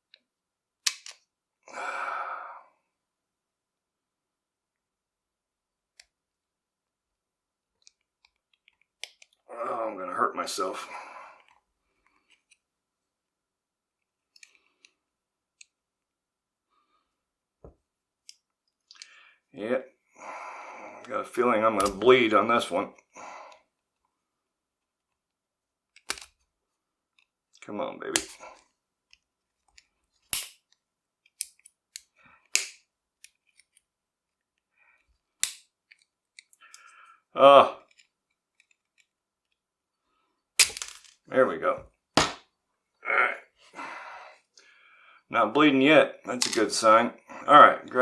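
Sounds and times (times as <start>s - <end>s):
small metal clicks: 0.8s - 1.3s, 29.1s - 33.8s
sharp metal clicks and snaps: 0.9s - 1.2s, 26.0s - 26.3s, 28.2s - 28.4s, 29.7s - 30.6s, 31.3s - 33.7s, 35.4s - 36.9s.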